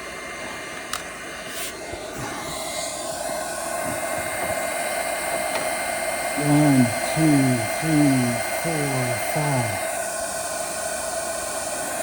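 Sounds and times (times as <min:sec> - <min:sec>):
induction heater whirring: 0:00.0 - 0:12.0.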